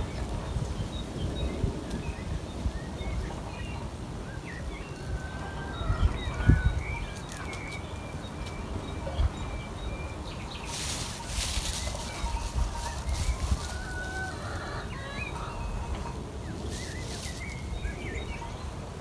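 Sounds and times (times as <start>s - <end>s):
small birds chirping: 5.8s - 19.0s.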